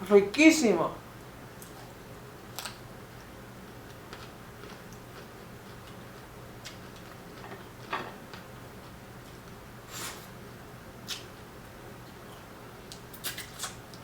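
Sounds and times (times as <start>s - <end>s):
chewing clicks and crunches: 3.8s - 9.0s.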